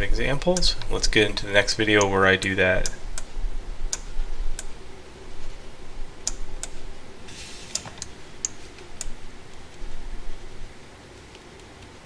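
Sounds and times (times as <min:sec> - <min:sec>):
faint steady hum: 0:00.0 - 0:12.0
computer key clicks: 0:06.2 - 0:06.8.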